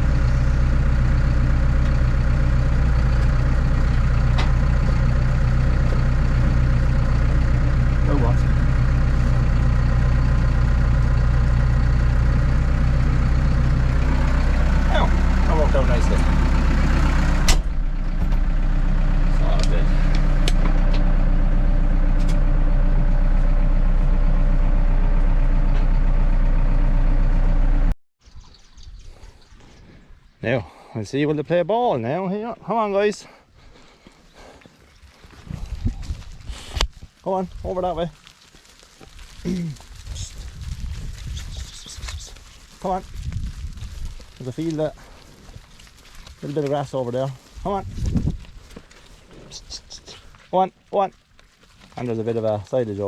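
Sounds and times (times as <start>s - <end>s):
tractor diesel engine idling: 0.0s - 27.9s.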